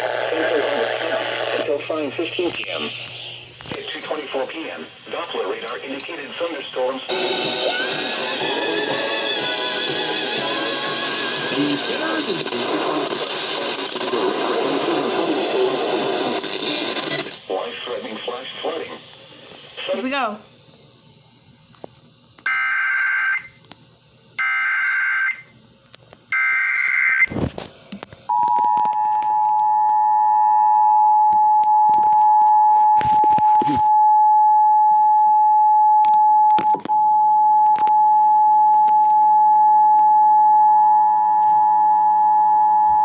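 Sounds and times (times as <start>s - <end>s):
screeching digital header tones: 7.1s - 17.4s, 22.5s - 23.6s, 26.3s - 27.4s.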